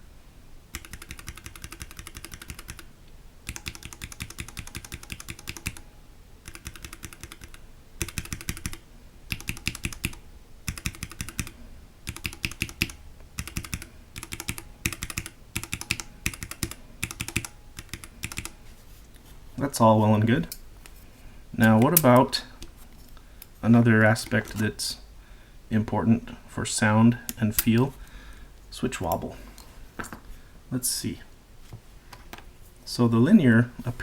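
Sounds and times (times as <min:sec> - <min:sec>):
mechanical keyboard keystrokes: 0:00.7 - 0:02.8, 0:03.5 - 0:05.8, 0:06.4 - 0:11.5, 0:12.1 - 0:18.5.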